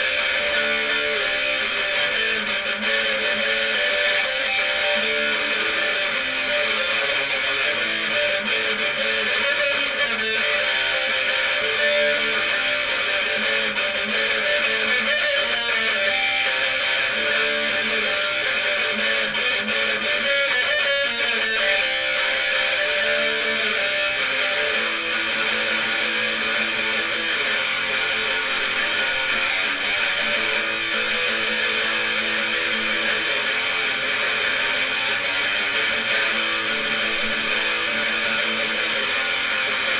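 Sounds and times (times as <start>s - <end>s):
electric guitar playing: 0.0s - 39.9s.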